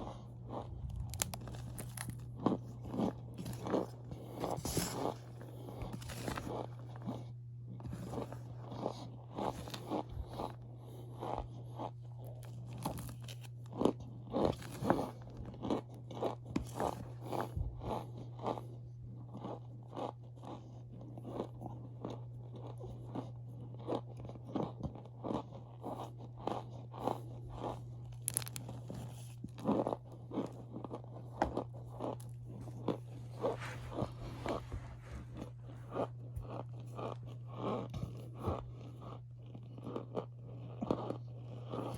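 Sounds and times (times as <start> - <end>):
cornstarch squeaky crunching: 0.0 - 34.7, 35.3 - 41.9.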